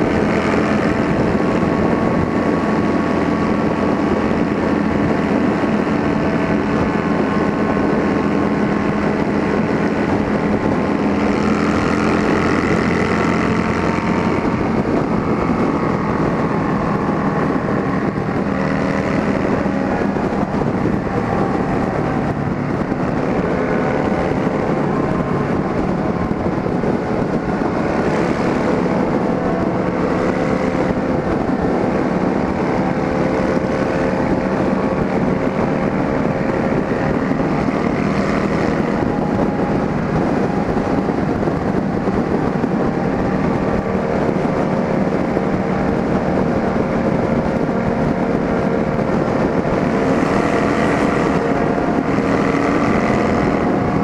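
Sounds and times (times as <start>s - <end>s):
motorcycle engines cruising: 0.0s - 54.0s
wind on microphone: 0.0s - 54.0s.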